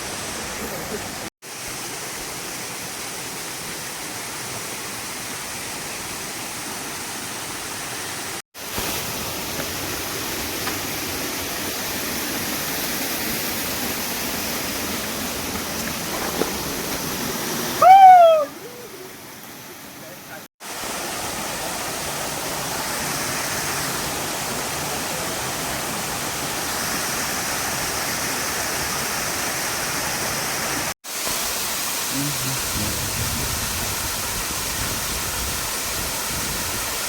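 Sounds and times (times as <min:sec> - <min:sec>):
waterfall rushing: 0:00.0 - 0:37.0
person shouting: 0:17.8 - 0:19.1.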